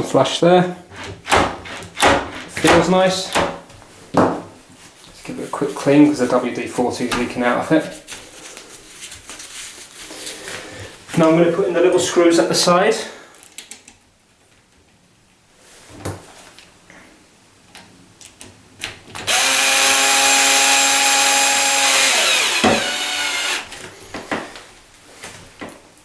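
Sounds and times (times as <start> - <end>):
power drill driving screw: 19.3 - 23.9.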